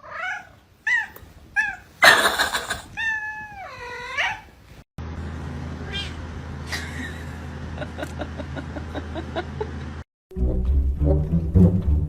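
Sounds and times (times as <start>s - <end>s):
cat meowing: 2.7s - 4.5s, 5.8s - 6.2s.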